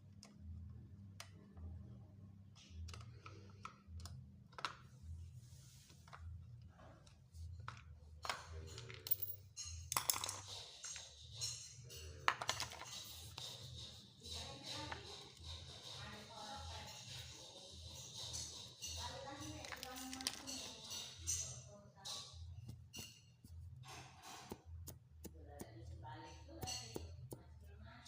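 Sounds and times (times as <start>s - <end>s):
small hard parts clicking and rattling: 7.0s - 16.0s, 16.6s - 25.0s.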